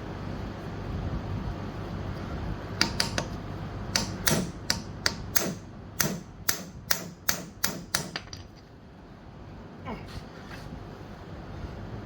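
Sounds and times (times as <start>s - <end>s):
hammer striking impact driver: 4.0s - 8.3s.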